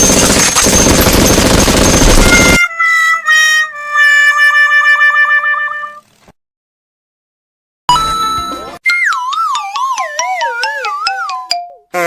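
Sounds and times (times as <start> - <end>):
loud rapid crackling: 0.0 - 2.6.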